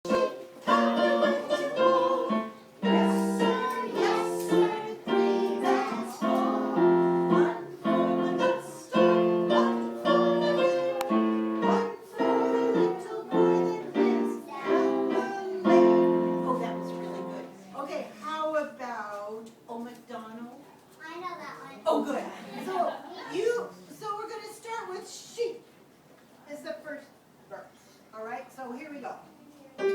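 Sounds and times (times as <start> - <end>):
instrumental accompaniment: 0.0 - 17.6
woman leading a sing-along song: 0.0 - 20.4.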